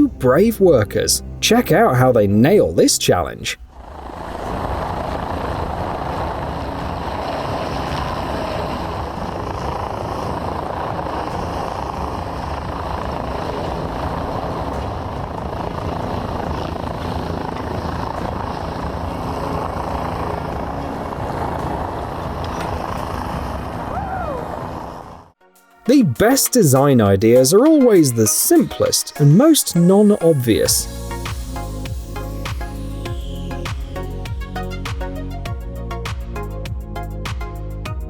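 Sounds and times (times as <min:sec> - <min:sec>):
heavy machine drone: 0:03.6 - 0:25.4, 0:29.3 - 0:36.1.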